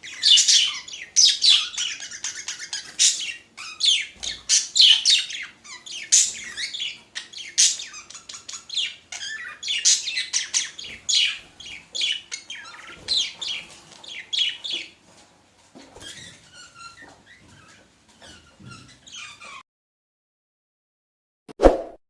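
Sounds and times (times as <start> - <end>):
budgerigars chattering: 0.0 - 15.0.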